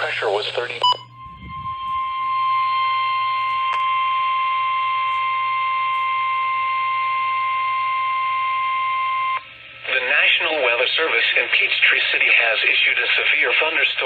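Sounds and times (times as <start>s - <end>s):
steady alarm tone: 0.0s - 10.6s.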